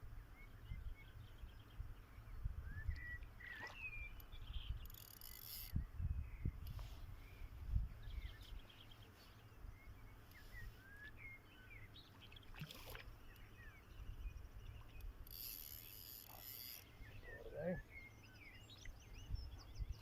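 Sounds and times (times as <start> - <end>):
small birds chirping: 0.2 - 20.0.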